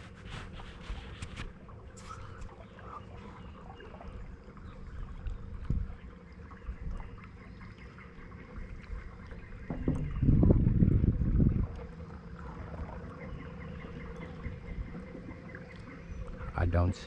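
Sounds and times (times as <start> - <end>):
faint constant hum: 0.0 - 17.0
dull knock: 9.7 - 10.5.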